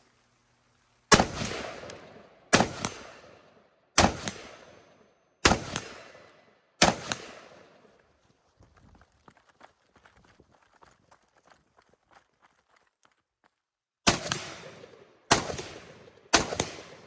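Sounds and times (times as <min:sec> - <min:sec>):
rifle shots echoing: 0:01.1 - 0:07.8, 0:14.1 - 0:17.0.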